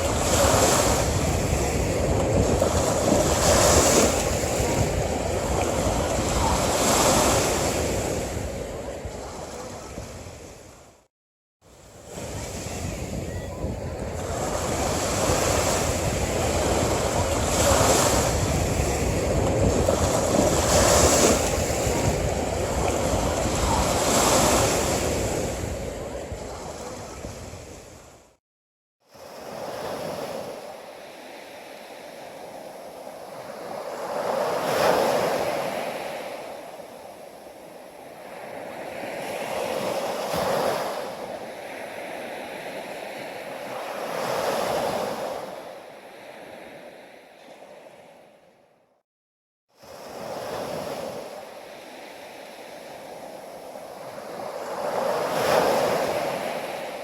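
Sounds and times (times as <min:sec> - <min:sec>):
wind rumble on microphone: 0:00.0 - 0:11.0, 0:11.8 - 0:28.4
sea waves breaking on beach: 0:00.0 - 0:28.4, 0:29.0 - 0:48.3, 0:49.8 - 0:57.0.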